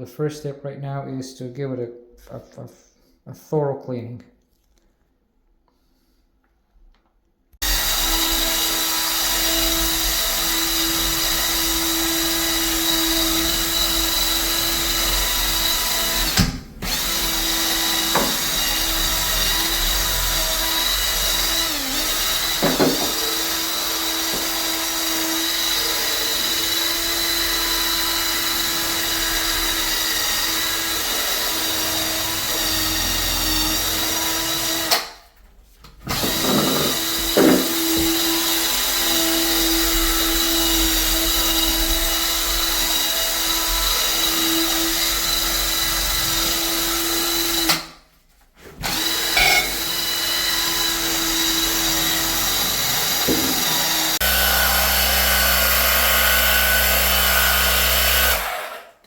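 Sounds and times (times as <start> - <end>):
electric power drill running: 7.6 - 35.2, 36.1 - 47.9, 48.8 - 58.9.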